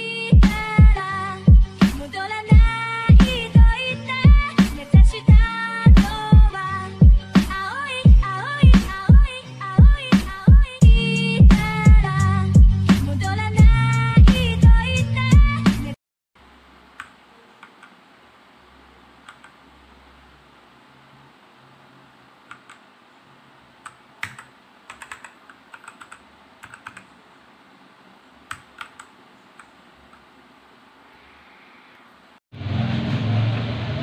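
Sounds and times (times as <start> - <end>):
mechanical keyboard keys clicking: 23.8 - 27.1, 28.5 - 30.2.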